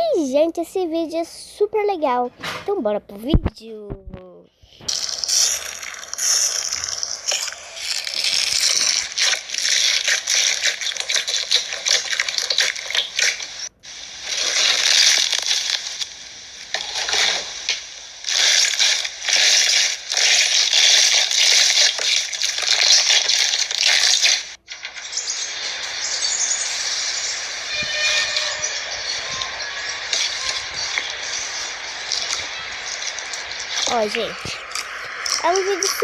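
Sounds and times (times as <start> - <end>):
slime crackling and popping: 4.8 - 26.6.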